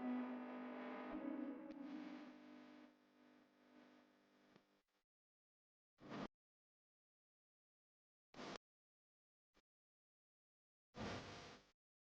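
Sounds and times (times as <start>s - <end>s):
guitar with heavy effects: 0.0s - 2.7s.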